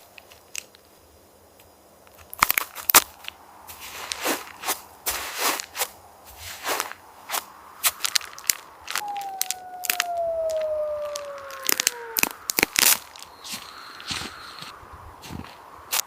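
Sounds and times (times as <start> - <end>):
crunches and snaps of handling: 0.0 - 1.0, 1.6 - 3.4
squeal falling in pitch: 9.0 - 12.3.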